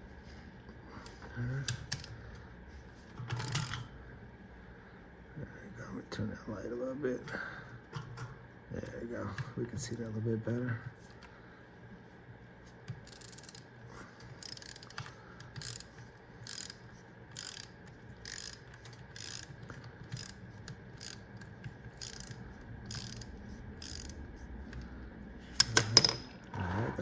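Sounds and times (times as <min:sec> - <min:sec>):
ratchet clicking: 0:03.3 - 0:03.8, 0:13.0 - 0:13.7, 0:14.4 - 0:24.2.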